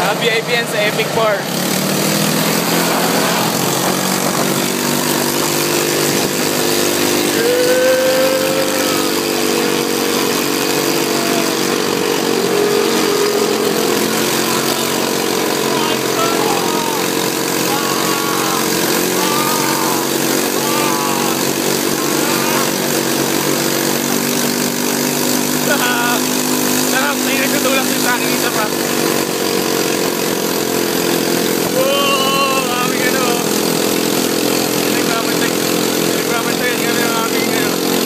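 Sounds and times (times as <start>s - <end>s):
atv engine running: 0.0s - 38.0s
faint voices: 11.0s - 22.9s.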